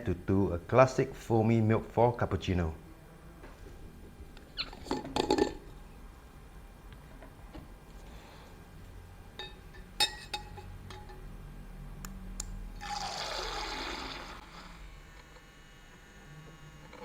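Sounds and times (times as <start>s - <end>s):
liquid pouring into a cup: 12.8s - 14.8s.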